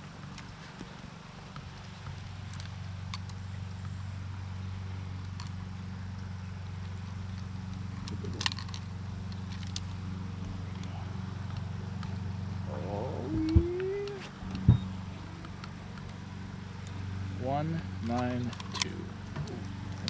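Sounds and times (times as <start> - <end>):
boat motor humming: 0.0 - 20.0
clicks and knocks from gear: 7.3 - 10.0, 18.0 - 20.0
short rising whine: 12.6 - 15.4.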